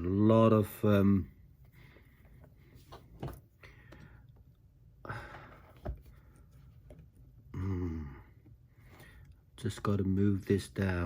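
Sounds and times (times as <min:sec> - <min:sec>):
man exhaling: 0:07.5 - 0:09.1.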